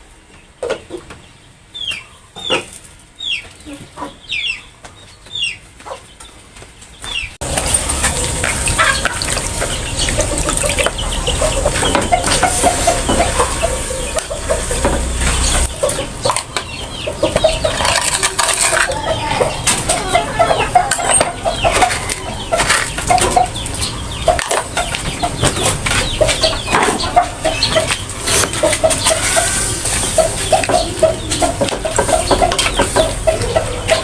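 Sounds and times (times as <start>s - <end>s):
chickens clucking: 0.0s - 34.0s
clicks and rustles: 14.2s - 20.0s.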